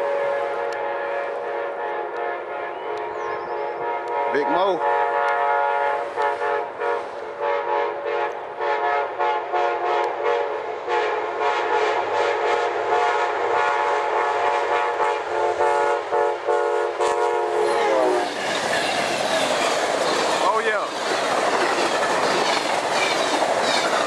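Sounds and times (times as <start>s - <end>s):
locomotive air horn blasts: 0.0s - 18.3s.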